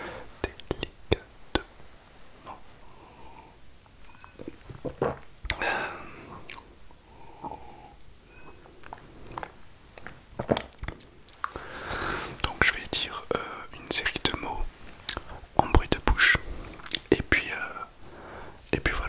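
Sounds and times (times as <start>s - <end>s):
wet mouth clicks and lip smacks: 6.4s - 6.7s, 8.8s - 11.6s, 16.8s - 17.1s.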